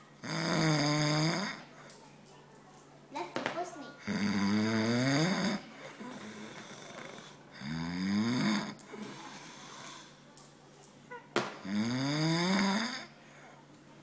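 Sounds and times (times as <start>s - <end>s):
man snoring: 0.2s - 1.6s, 4.0s - 10.1s, 11.6s - 13.1s
quiet breathing: 5.6s - 7.7s, 8.8s - 10.3s, 13.0s - 13.9s.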